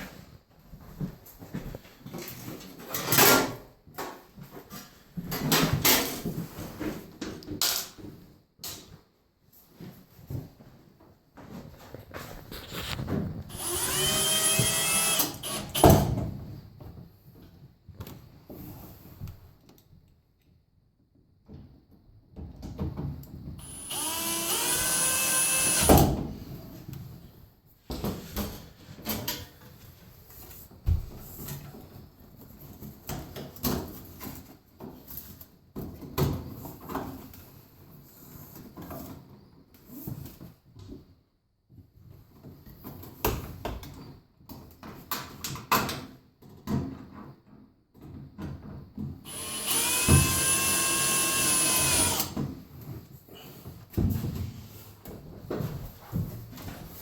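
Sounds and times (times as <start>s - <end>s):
power drill driving a screw: 13.5s - 16.0s, 23.6s - 26.1s, 49.3s - 52.4s.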